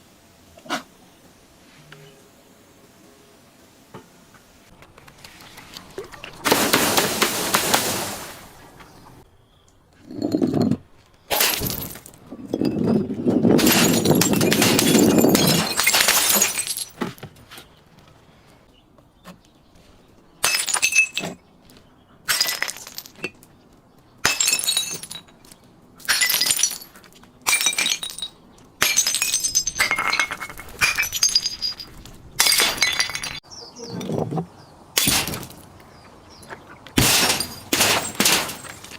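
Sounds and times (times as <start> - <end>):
glass bottles shattering: 6.4 - 8.4, 10.1 - 17.1, 20.4 - 21.4, 22.3 - 23.4, 24.2 - 25.4, 26.0 - 33.4, 35.0 - 35.6, 37.0 - 38.9.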